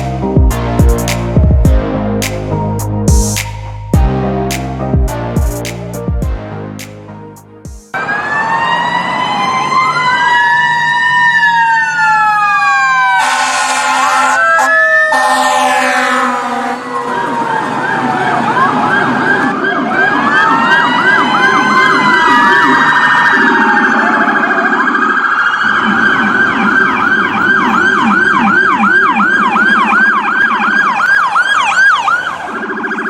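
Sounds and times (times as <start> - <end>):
wailing siren: 7.9 - 33.0
fast yelping siren: 8.0 - 33.0.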